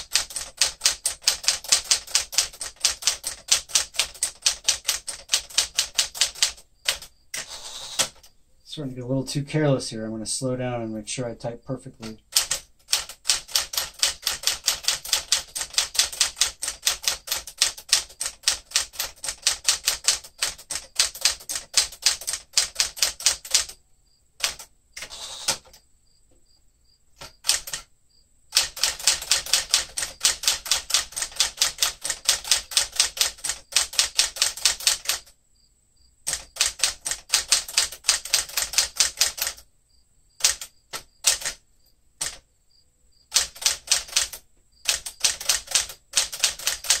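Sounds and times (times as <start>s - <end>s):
manual typewriter typing: 0.0s - 8.3s, 12.0s - 23.8s, 24.4s - 25.8s, 27.2s - 27.9s, 28.5s - 35.3s, 36.3s - 39.6s, 40.4s - 41.6s, 42.2s - 42.4s, 43.3s - 47.0s.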